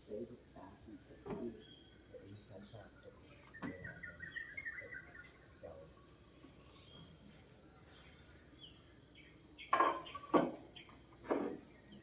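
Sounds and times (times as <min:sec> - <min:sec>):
high insect drone: 0:00.0 - 0:12.0
faint bird chirps: 0:00.1 - 0:12.0
dishes and cutlery clinking: 0:09.7 - 0:10.6.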